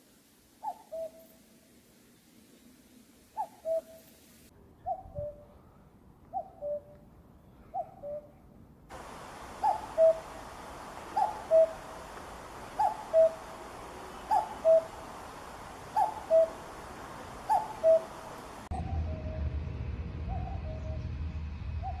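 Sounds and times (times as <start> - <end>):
cuckoo calling: 0.6 - 1.4, 3.3 - 4.1, 6.3 - 6.9, 7.7 - 19.3
low rumble: 18.7 - 22.0.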